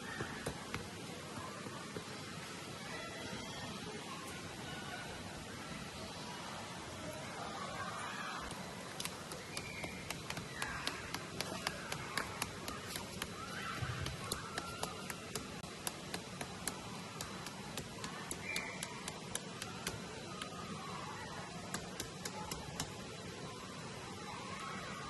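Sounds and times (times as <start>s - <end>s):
tent pegs hammered into ground: 9.0s - 20.6s, 21.7s - 23.0s.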